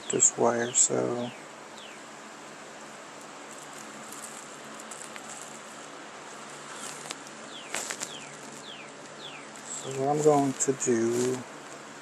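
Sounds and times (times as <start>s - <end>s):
steady background hiss: 0.0s - 12.0s
small animal chirping: 6.7s - 10.5s.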